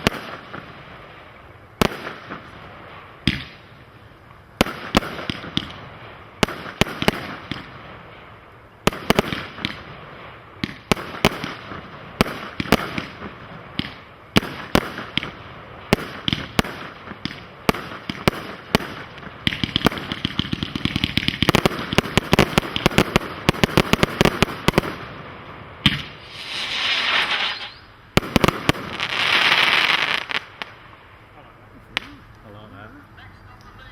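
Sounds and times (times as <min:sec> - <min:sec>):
firework bangs and crackling: 0:00.0 - 0:31.2
rapid firework pops: 0:03.2 - 0:03.6, 0:06.4 - 0:07.7, 0:10.6 - 0:25.0
loud firework hissing: 0:08.9 - 0:30.9.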